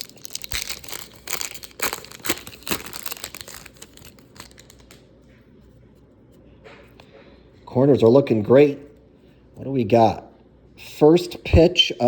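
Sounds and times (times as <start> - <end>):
wrapper torn and crinkled: 0.0 - 5.0.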